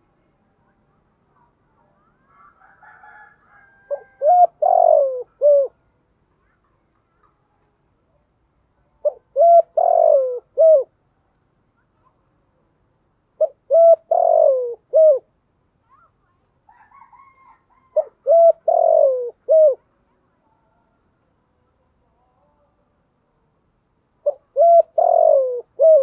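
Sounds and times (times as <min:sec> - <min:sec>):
dove cooing: 0:02.2 - 0:05.8, 0:09.0 - 0:10.9, 0:13.4 - 0:15.3, 0:16.7 - 0:19.8, 0:24.2 - 0:26.0.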